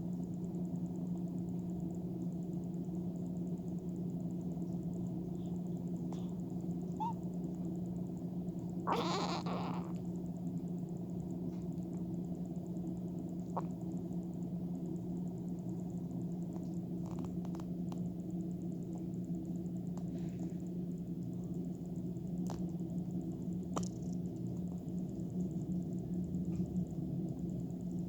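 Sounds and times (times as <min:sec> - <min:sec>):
steady low hum: 0:00.0 - 0:28.0
baby hiccuping: 0:08.9 - 0:09.9.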